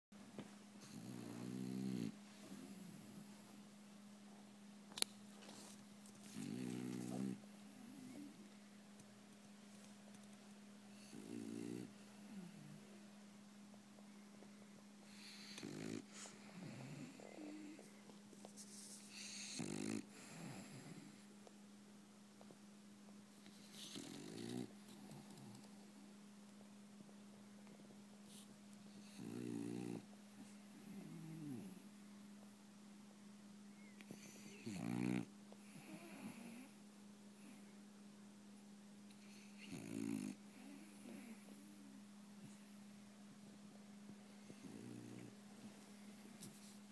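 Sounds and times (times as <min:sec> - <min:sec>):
dog snoring: 0:00.8 - 0:03.5, 0:06.2 - 0:08.4, 0:10.9 - 0:12.9, 0:15.1 - 0:17.9, 0:19.0 - 0:21.2, 0:23.6 - 0:25.7, 0:28.9 - 0:31.8, 0:34.0 - 0:36.8, 0:39.2 - 0:41.8, 0:44.4 - 0:45.4.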